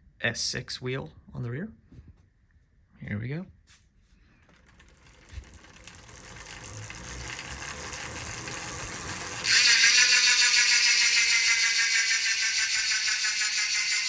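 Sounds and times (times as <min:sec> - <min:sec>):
spinning wheel whir: 0:04.5 - 0:14.0
freewheel ratchet buzz: 0:04.8 - 0:14.0.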